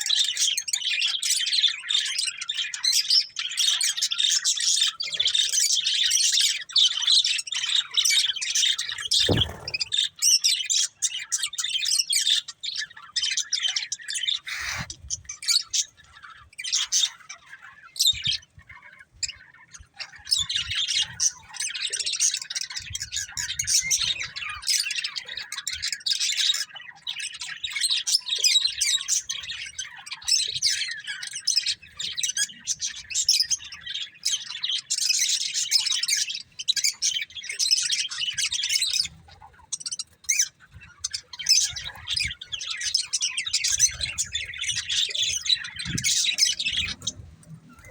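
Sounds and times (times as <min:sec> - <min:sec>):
low thump: 0:09.1 - 0:10.0
budgerigars chirping: 0:09.2 - 0:10.0, 0:13.7 - 0:14.9, 0:41.1 - 0:47.9.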